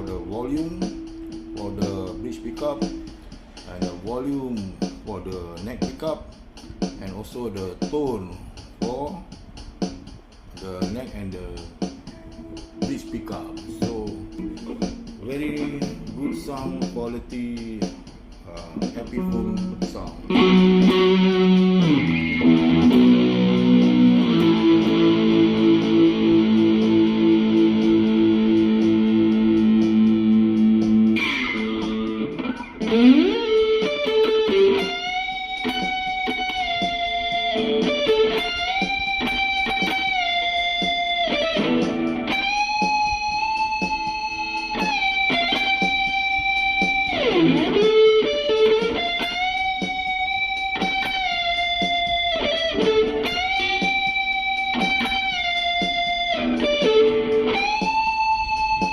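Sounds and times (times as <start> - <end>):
electric guitar through amplifier: 18.5 - 58.9.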